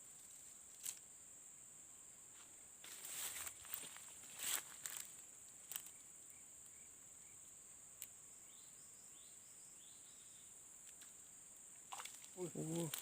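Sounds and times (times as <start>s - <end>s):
insect drone: 0.0s - 13.0s.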